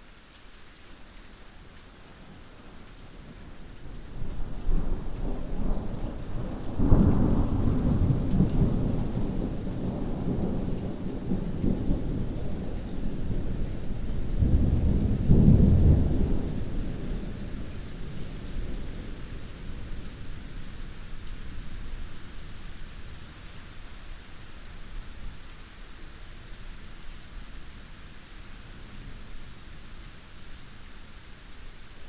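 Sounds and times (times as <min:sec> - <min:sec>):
heavy rain: 0:00.0 - 0:32.0
thunder rumbling: 0:04.1 - 0:23.4.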